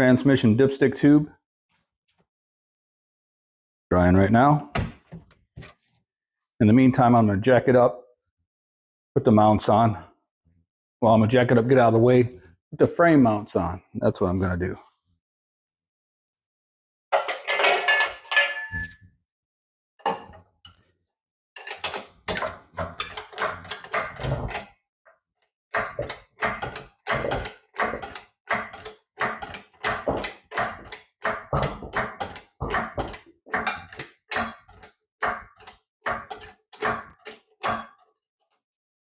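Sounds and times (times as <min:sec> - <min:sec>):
floor jack pumping clanks: 0:21.7 - 0:24.8, 0:25.7 - 0:38.0
irregular knocks: 0:25.7 - 0:38.0.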